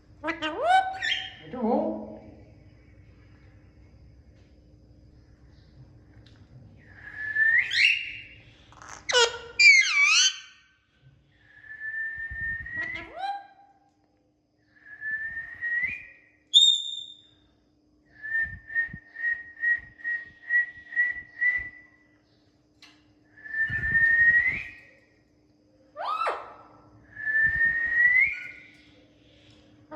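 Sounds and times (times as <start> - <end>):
parrot whistling: 0.7 - 1.4, 7.4 - 8.3, 9.0 - 10.5, 12.8 - 13.6, 16.5 - 17.2.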